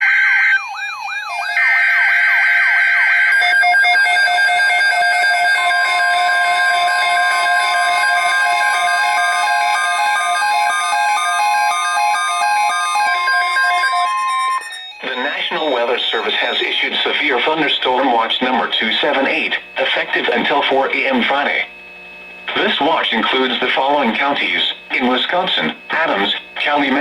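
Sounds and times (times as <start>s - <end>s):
sweeping siren-like wails: 0.0s - 16.6s
alternating two-pitch beeps: 3.2s - 16.9s
steady alert tone: 14.2s - 16.6s.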